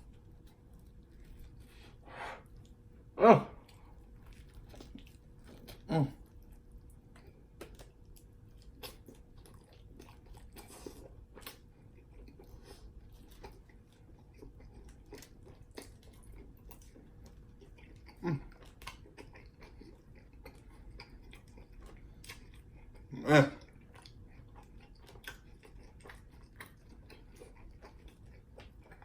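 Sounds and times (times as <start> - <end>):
person humming: 3.2 - 3.6
wet chewing and mouth clicks: 3.6 - 29.0.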